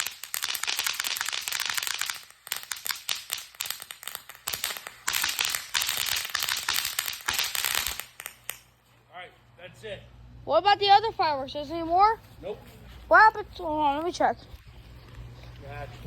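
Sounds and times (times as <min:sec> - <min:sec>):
firework hissing: 0:00.0 - 0:08.7
firework crackling: 0:00.0 - 0:08.8.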